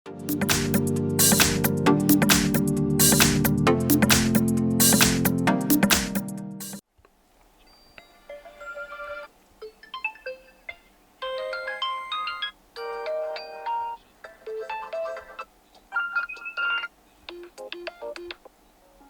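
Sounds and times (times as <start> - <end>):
chiming electronic ringtone: 7.7 - 15.4.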